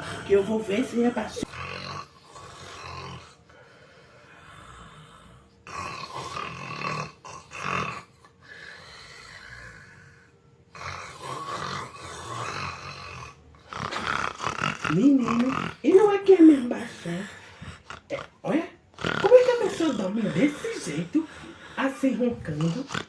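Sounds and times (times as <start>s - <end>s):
quiet breathing: 0.0s - 5.6s, 13.6s - 23.0s
person snoring: 0.0s - 23.0s.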